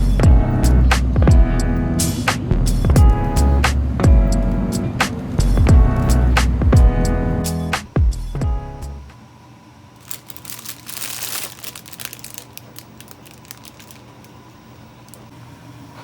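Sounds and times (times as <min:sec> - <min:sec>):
background music: 0:00.0 - 0:09.1
faint steady hum: 0:00.0 - 0:16.0
crinkling and crackling: 0:10.0 - 0:15.3.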